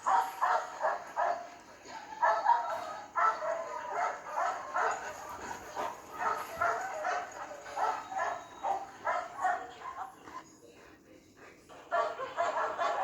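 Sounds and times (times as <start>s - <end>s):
dog yipping and barking: 6.2s - 10.0s.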